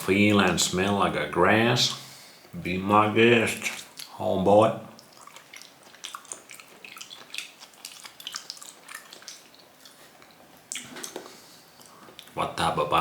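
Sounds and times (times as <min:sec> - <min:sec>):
mouth chewing with wet smacks: 0:03.7 - 0:04.2, 0:04.9 - 0:12.4.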